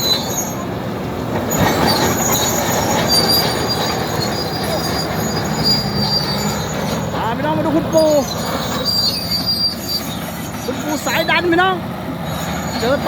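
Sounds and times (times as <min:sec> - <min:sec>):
bulldozer diesel engine running: 0:00.0 - 0:13.0
steel tracks squealing: 0:00.0 - 0:13.0.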